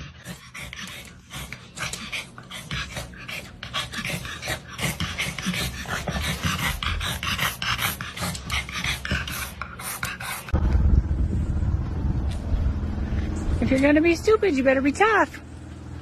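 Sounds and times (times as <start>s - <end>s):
dog panting: 0.0s - 10.6s.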